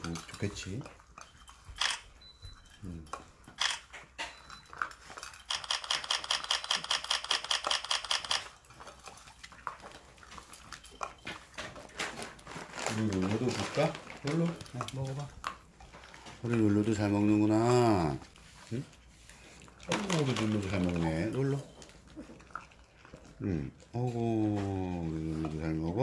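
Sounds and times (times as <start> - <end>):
kibble clinking against bowl: 0.0 - 1.7
dog crunching kibble: 3.2 - 17.0, 18.2 - 24.0.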